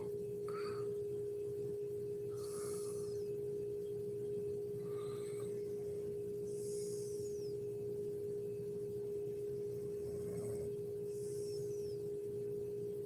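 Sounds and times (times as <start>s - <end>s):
faint high whistling breaths: 0.0s - 1.2s, 2.1s - 12.7s
steady hum: 0.0s - 13.0s.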